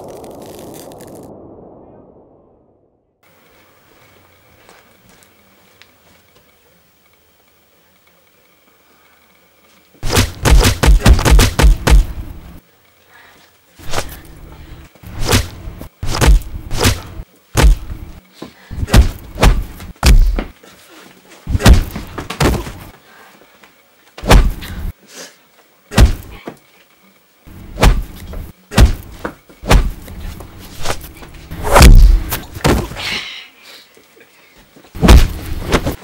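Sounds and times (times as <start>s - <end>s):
bass-heavy punch hits: 10.0s - 12.4s, 15.1s - 18.2s, 18.8s - 20.5s, 21.5s - 22.6s, 24.3s - 24.7s, 26.0s - 26.3s, 27.7s - 28.2s, 28.8s - 30.1s, 31.6s - 32.8s, 35.0s - 35.9s.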